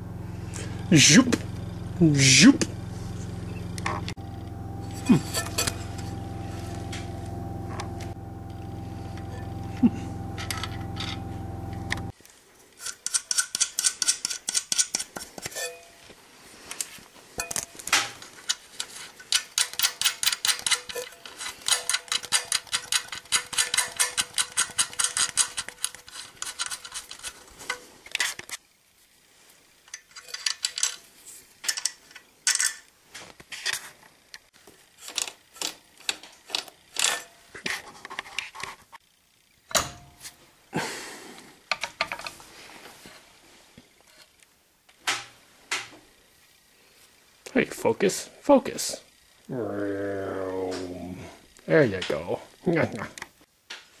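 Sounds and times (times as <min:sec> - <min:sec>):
machine hum: 0:00.0 - 0:12.2
tools clicking on metal parts: 0:12.8 - 0:15.8, 0:17.4 - 0:28.5, 0:29.9 - 0:32.9.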